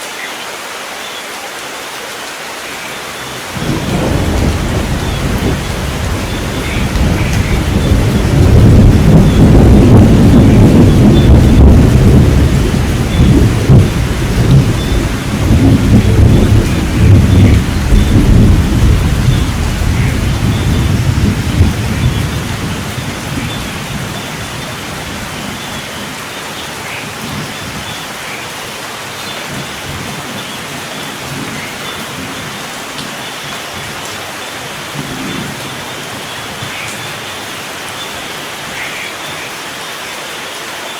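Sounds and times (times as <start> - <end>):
steady rain falling: 0.0 - 40.9
low thunder rumble: 3.5 - 26.1.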